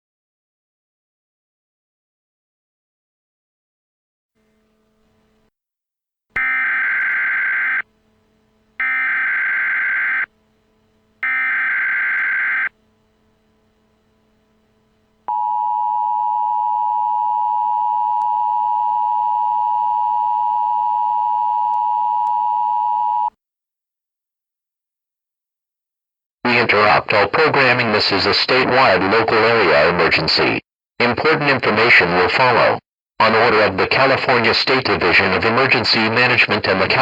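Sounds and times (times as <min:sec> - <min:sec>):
data burst tones: 0:06.4 - 0:07.9, 0:08.8 - 0:10.3, 0:11.2 - 0:12.8
two-tone attention signal: 0:06.4 - 0:07.9, 0:08.8 - 0:10.3, 0:11.2 - 0:12.7.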